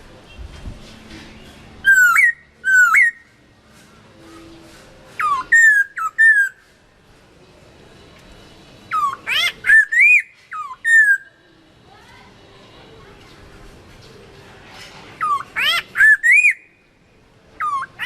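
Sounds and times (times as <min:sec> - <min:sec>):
bird singing whistled notes: 0:01.8 - 0:03.3, 0:05.2 - 0:06.6, 0:08.9 - 0:11.3, 0:15.2 - 0:16.8, 0:17.6 - 0:18.0.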